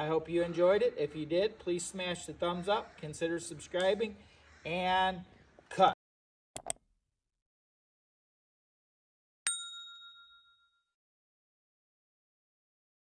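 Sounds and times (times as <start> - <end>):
bright ding: 9.5 - 11.0.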